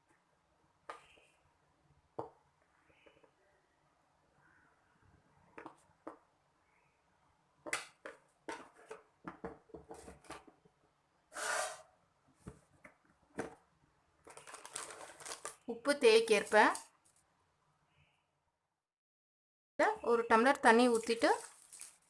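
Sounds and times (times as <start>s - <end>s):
rustling: 14.3s - 15.7s, 20.9s - 22.0s.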